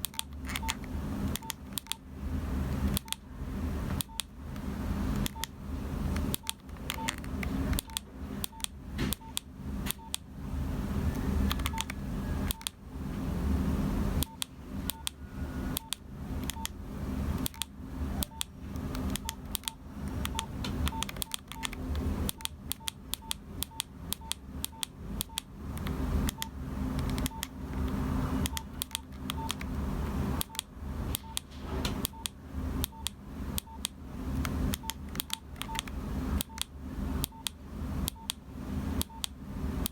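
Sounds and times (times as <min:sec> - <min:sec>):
phone keypad clicks with beeps: 0:00.0 - 0:02.0, 0:02.9 - 0:03.2, 0:04.0 - 0:04.3, 0:05.2 - 0:05.6, 0:06.3 - 0:10.2, 0:11.4 - 0:12.8, 0:14.2 - 0:16.8, 0:17.4 - 0:27.6, 0:28.4 - 0:29.7, 0:30.4 - 0:34.0, 0:34.7 - 0:38.4, 0:39.0 - 0:39.9
steady low hum: 0:00.0 - 0:39.9.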